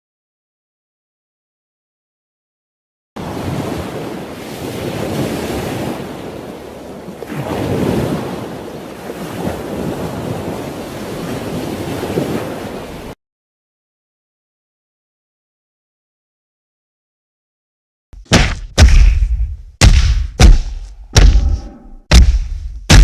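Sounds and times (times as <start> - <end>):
ocean waves breaking: 3.2 - 13.2
wind: 3.2 - 13.2.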